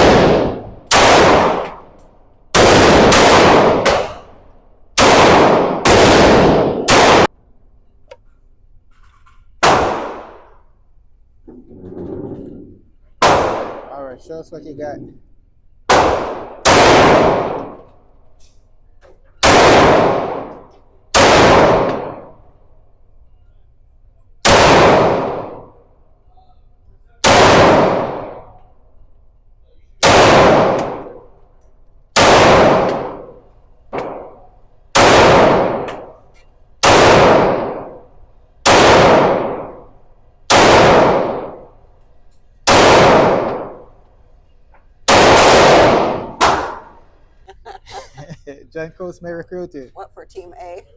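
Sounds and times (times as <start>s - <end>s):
echoing gunshots: 0.0s - 7.4s, 9.6s - 10.6s, 12.7s - 14.1s, 15.8s - 17.9s, 19.4s - 22.6s, 24.4s - 26.0s, 27.2s - 28.6s, 30.0s - 31.4s, 32.1s - 36.2s, 36.8s - 41.9s, 42.6s - 44.0s, 45.0s - 47.2s.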